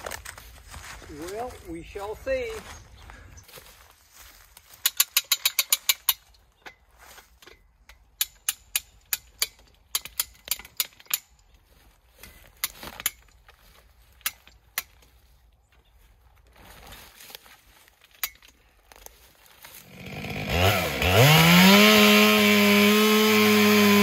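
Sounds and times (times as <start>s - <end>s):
metal ratchet clicks: 4.8s - 6.2s, 7.9s - 11.4s.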